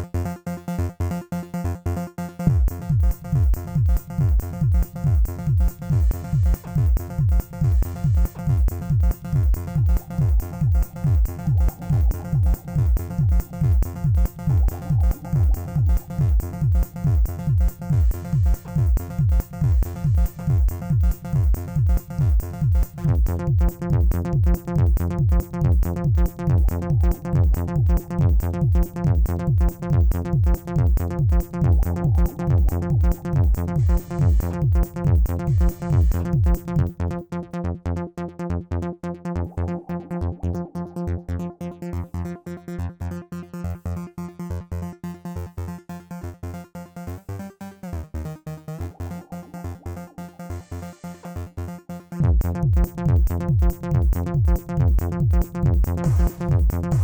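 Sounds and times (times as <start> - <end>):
electronic disco dance music: 2.4 - 37.1, 47.7 - 57.0
steady kick drum: 2.5 - 37.1, 52.2 - 57.0
synthesizer tones: 9.8 - 21.2, 30.4 - 36.8, 48.7 - 51.4, 56.0 - 57.0.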